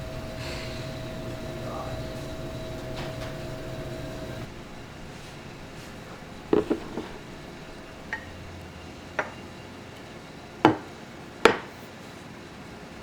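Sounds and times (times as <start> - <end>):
dishes and cutlery clinking: 0.0 - 8.6.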